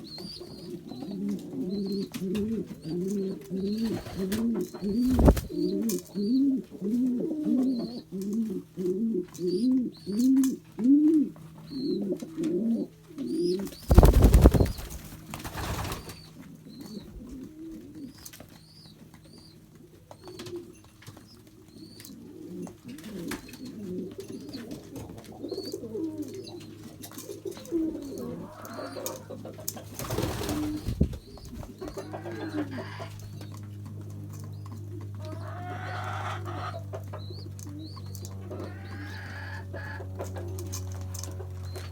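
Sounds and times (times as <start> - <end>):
pigeons cooing: 0.0 - 41.9
steady low hum: 1.3 - 6.7, 12.8 - 19.9, 26.0 - 41.9.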